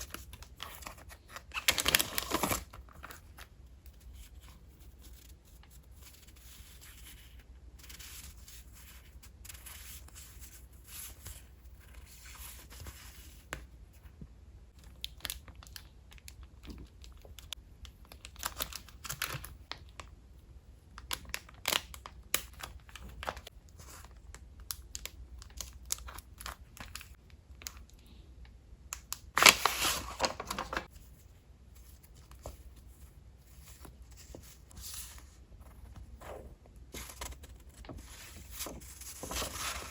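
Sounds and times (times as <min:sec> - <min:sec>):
packaging rustling and crinkling: 0:00.6 - 0:03.3, 0:29.4 - 0:30.9.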